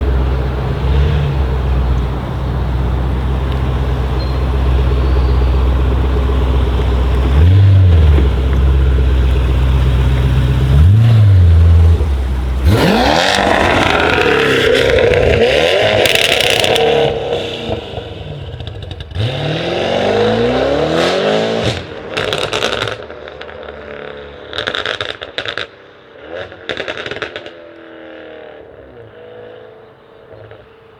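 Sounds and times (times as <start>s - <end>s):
exhaust crackles and pops: 0.0s - 19.4s, 21.7s - 28.0s
car engine revving and accelerating: 0.0s - 30.9s.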